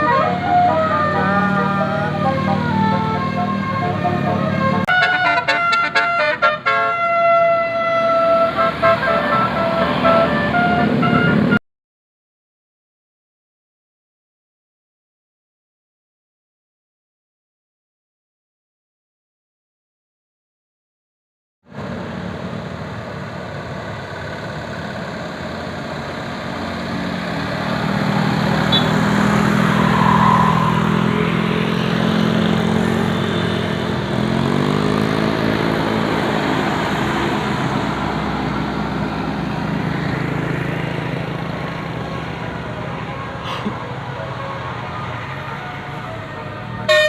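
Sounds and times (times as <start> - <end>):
bus engine revving: 0.0 - 11.6, 21.7 - 47.0.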